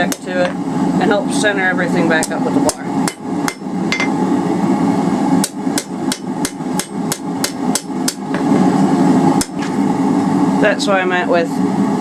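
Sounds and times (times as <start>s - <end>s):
steady hum: 0.0s - 12.0s
hammer striking steel on anvil: 2.2s - 4.2s, 5.4s - 8.5s.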